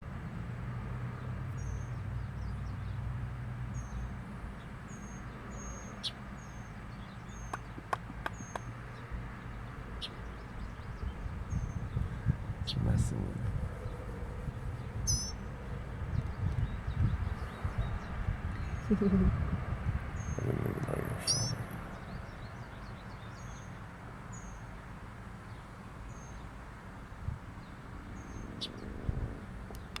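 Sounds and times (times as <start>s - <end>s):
bird chirping: 4.9s - 19.4s, 20.2s - 23.8s
low background rumble: 10.2s - 23.0s.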